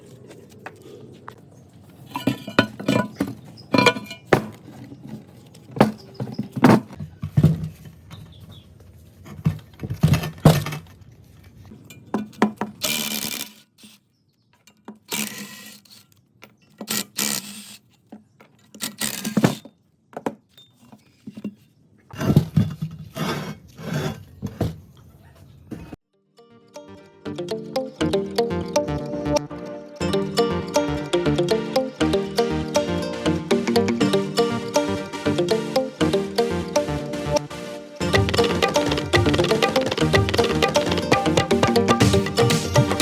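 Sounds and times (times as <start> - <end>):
metal parts knocking and clinking: 2.1 - 4.4.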